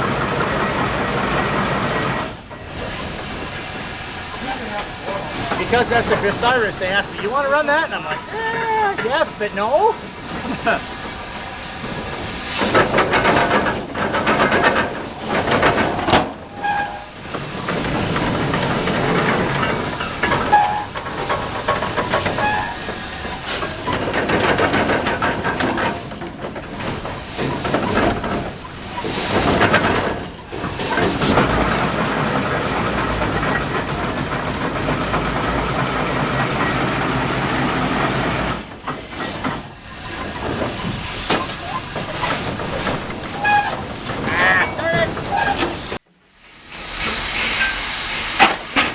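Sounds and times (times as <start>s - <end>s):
engine exhaust surging: 0.0s - 16.2s
steady hiss of steam: 1.5s - 48.9s.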